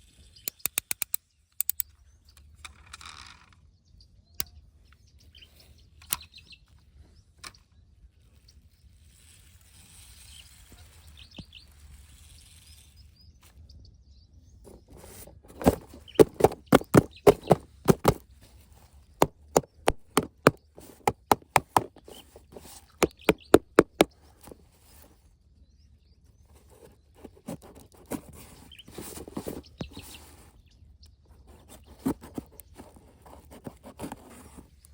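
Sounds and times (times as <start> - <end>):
sharp clicks and knocks: 14.7 - 18.2, 19.2 - 24.6.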